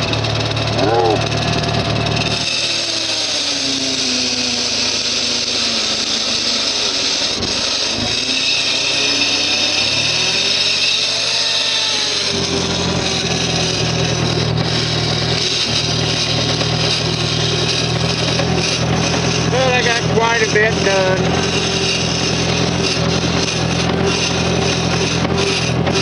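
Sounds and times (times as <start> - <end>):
skid steer engine running: 0.0 - 26.0.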